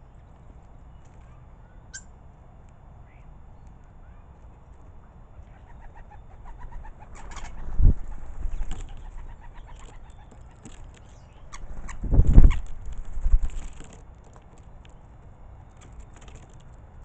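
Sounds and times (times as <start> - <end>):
birds chirping and twittering: 3.0 - 16.8
wings flapping: 6.5 - 15.0, 15.7 - 16.8.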